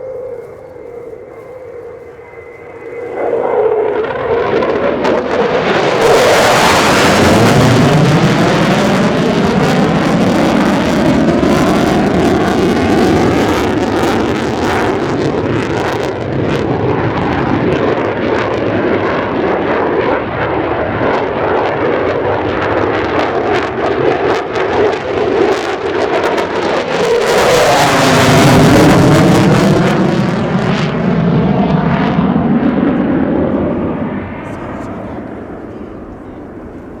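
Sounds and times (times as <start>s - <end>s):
sweeping phasing jet tone: 0.0s - 17.1s
jet engines roaring: 0.0s - 37.0s.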